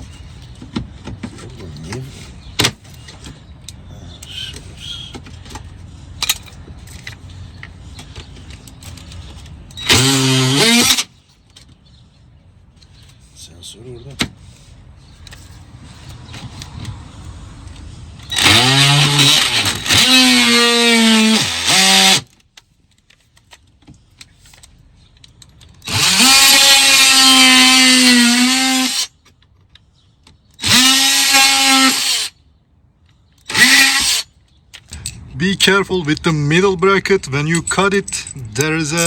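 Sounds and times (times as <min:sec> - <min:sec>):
power tool motor running: 0:09.8 - 0:11.1, 0:18.3 - 0:22.2, 0:25.8 - 0:29.1, 0:30.6 - 0:32.3, 0:33.5 - 0:34.2.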